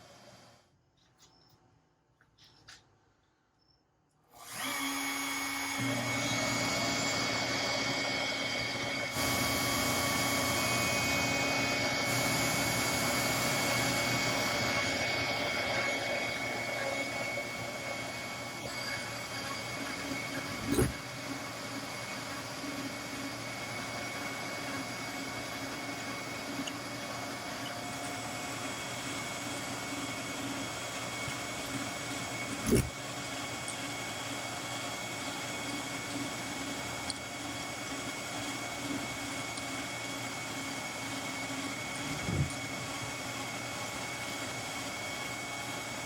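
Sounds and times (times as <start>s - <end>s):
motorized tool humming and whining: 4.4s - 46.0s.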